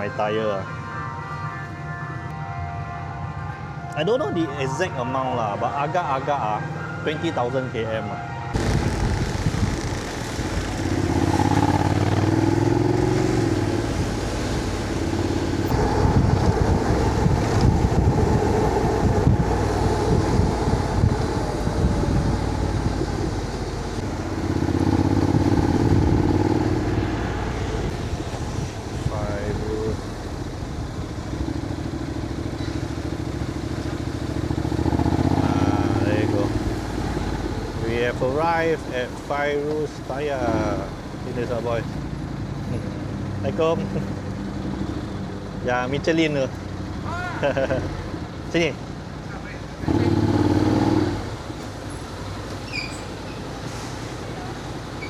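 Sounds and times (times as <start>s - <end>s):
road and wind noise: 0.0s - 55.0s
motorcycle engine accelerating: 8.6s - 14.1s, 15.0s - 37.8s, 49.8s - 51.5s.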